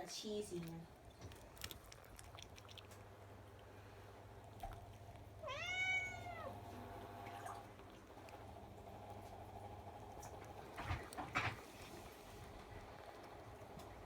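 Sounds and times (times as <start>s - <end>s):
cat meowing: 5.4s - 6.6s.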